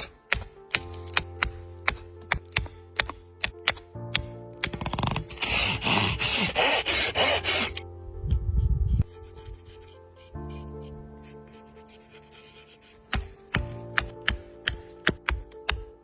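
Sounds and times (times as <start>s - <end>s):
tool scraping wood: 0.0s - 7.8s, 8.9s - 15.4s
background music with steady tones: 0.0s - 16.0s
sharp clicks and taps: 0.3s - 5.2s.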